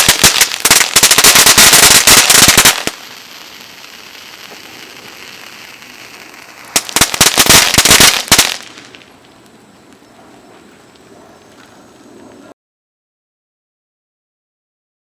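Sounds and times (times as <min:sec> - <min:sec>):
firework fountain hissing: 0:00.0 - 0:09.6
firework cracks and pops: 0:00.0 - 0:10.0.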